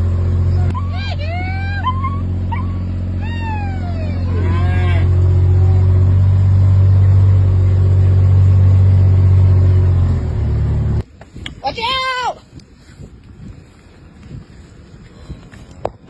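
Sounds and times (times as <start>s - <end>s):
vehicle engine running: 0.0s - 11.0s
farm animal call gliding down: 0.5s - 6.2s.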